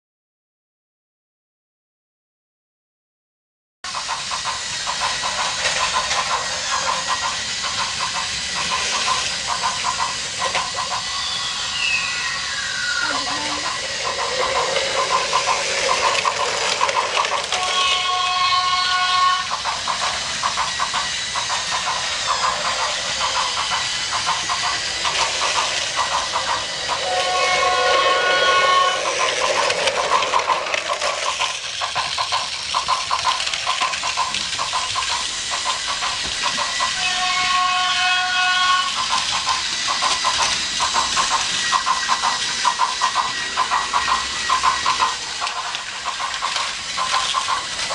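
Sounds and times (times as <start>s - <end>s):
rapid clicking of toy train: 3.9s - 47.9s
toy train motor whir: 3.9s - 47.9s
toy train whistle: 8.6s - 19.7s, 21.6s - 31.3s, 36.2s - 40.5s.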